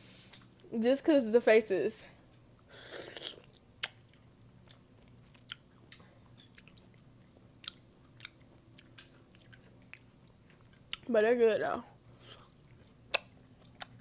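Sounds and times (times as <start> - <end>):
person chewing wet crunches: 2.9 - 11.1, 12.2 - 14.0.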